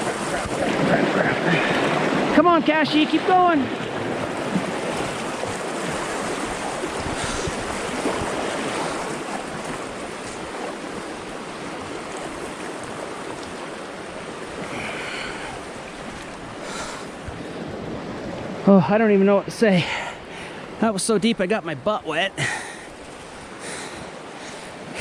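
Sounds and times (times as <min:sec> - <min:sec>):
person wading through water: 0:00.0 - 0:18.5, 0:22.4 - 0:25.0
river rushing: 0:00.0 - 0:25.0.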